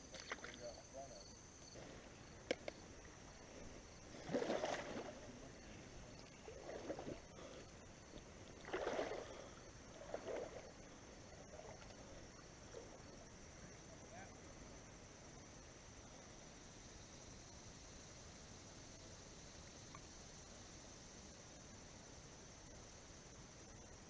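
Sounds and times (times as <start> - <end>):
water sloshing and splashing: 0.0 - 0.7, 2.9 - 13.0
high insect drone: 0.0 - 24.0.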